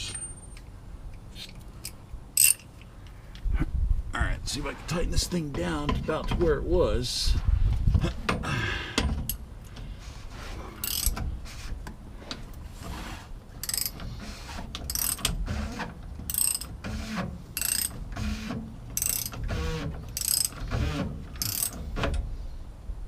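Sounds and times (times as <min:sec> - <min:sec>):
ratchet wrench clicking: 0:01.8 - 0:02.7, 0:10.8 - 0:11.2, 0:13.6 - 0:14.0, 0:14.9 - 0:15.3, 0:16.3 - 0:16.7, 0:17.6 - 0:18.0, 0:19.0 - 0:19.4, 0:20.2 - 0:20.6, 0:21.4 - 0:21.8.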